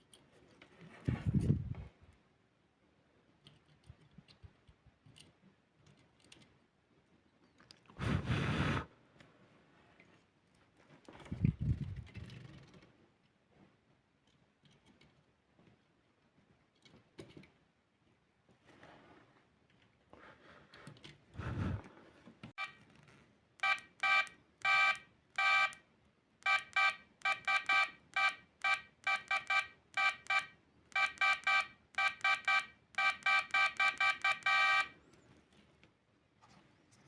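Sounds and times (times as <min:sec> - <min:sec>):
short electronic beeps: 0:23.6 - 0:25.8, 0:26.4 - 0:35.0.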